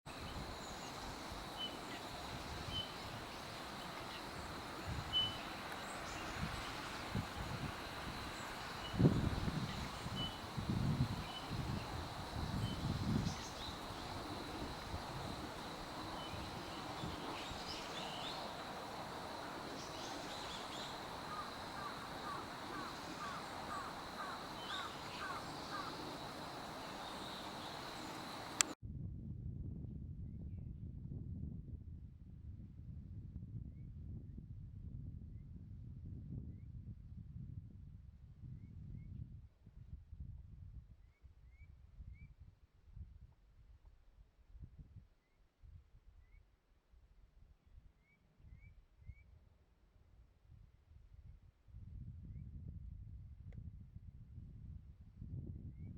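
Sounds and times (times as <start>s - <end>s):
faint high chirps: 0.1s - 28.8s
wind rumble on microphone: 0.1s - 46.3s, 50.0s - 55.9s
birds high call notes: 0.2s - 28.7s
bird short repeated calls: 15.4s - 28.7s.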